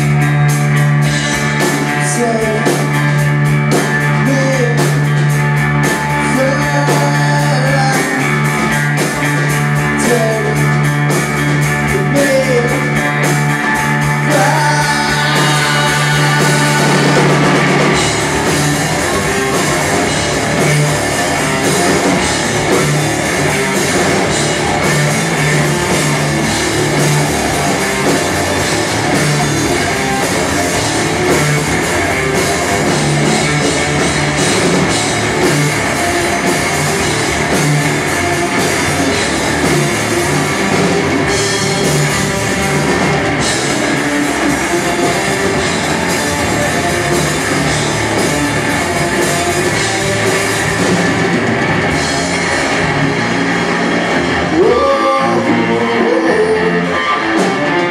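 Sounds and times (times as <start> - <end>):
rock band playing live: 0.0 - 57.9.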